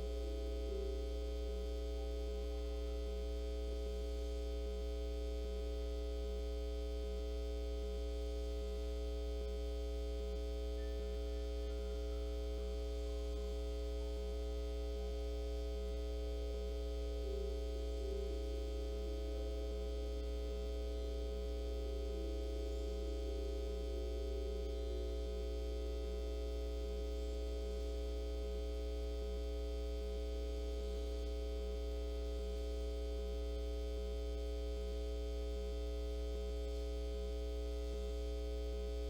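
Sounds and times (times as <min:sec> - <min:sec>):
electrical mains hum: 0:00.0 - 0:39.0
constant electronic tones: 0:09.9 - 0:29.8.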